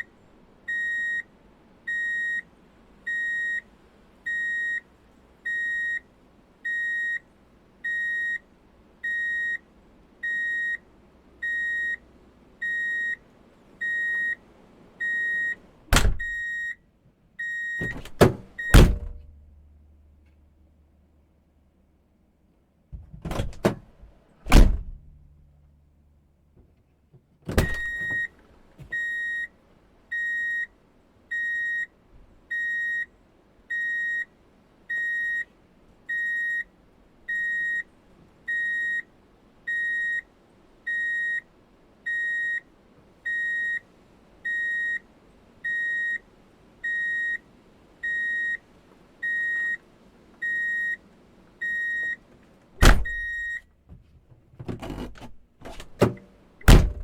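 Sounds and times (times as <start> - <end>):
vehicle reverse warning beeps: 0.7 - 1.3, 1.9 - 9.6, 10.2 - 12.0, 12.6 - 13.2, 13.8 - 14.4, 15.0 - 15.6, 16.2 - 16.8, 17.4 - 18.0, 18.6 - 18.8, 27.6 - 35.5, 36.1 - 36.7, 37.3 - 37.9, 38.5 - 39.1, 39.7 - 40.3, 40.9 - 41.5, 42.1 - 49.8, 50.4 - 51.0, 51.6 - 52.2, 53.0 - 53.7
loud clunk: 17.8 - 19.3, 52.8 - 53.3, 55.1 - 57.0
sharp thump: 17.9 - 19.3, 52.8 - 53.2, 55.7 - 57.0.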